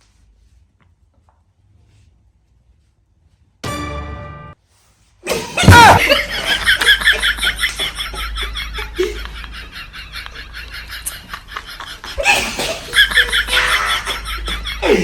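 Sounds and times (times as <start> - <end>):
person laughing hard: 5.6 - 15.0.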